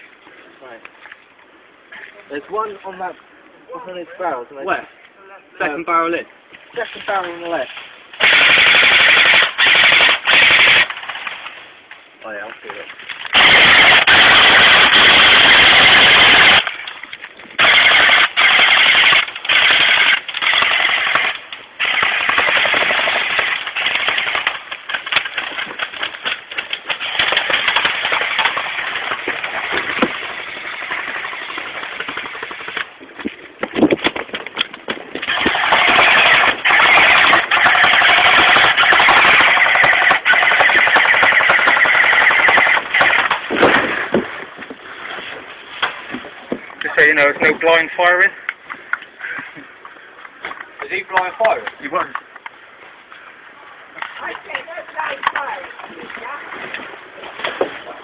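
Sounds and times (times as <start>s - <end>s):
airsoft guns firing full-auto: 8.2s - 11.5s, 13.3s - 16.7s, 17.6s - 26.0s, 26.6s - 32.8s, 35.3s - 43.8s.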